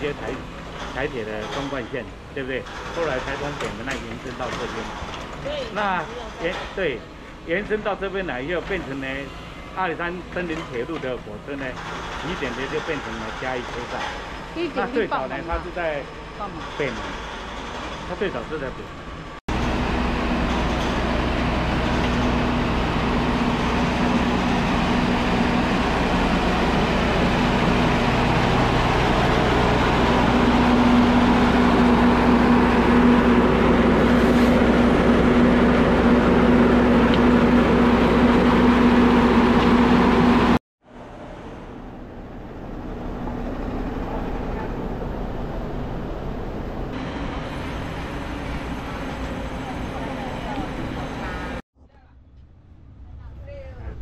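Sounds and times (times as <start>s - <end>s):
diesel locomotive engine running: 0.0s - 54.0s
quiet steady rumble: 41.0s - 47.0s, 47.6s - 54.0s.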